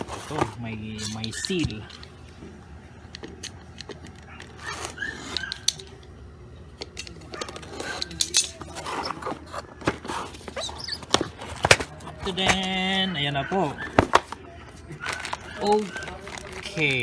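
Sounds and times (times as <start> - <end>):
packaging wrap rustling: 13.8 - 17.0.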